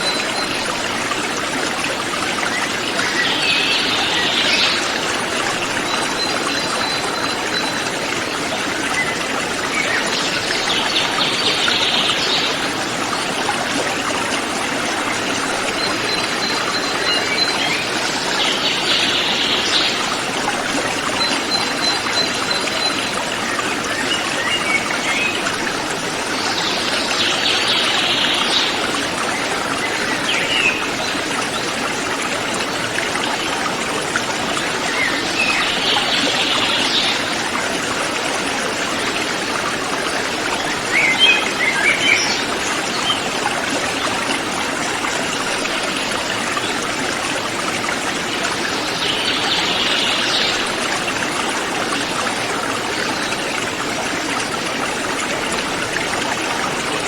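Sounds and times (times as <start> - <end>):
river flowing over rocks: 0.0 - 57.0.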